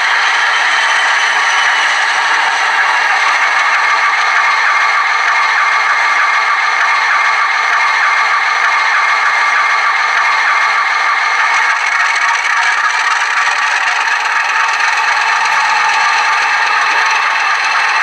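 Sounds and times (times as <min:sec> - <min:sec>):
model locomotive running: 0:00.0 - 0:18.0.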